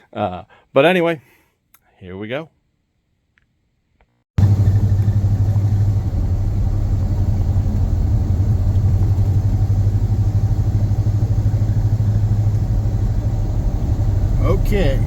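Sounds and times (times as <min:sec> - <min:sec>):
engine running with low hum: 0:04.4 - 0:15.0.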